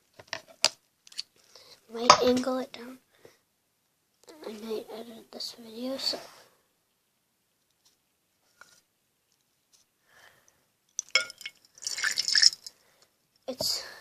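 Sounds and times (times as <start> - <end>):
water spilling and dripping: 11.0 - 12.7.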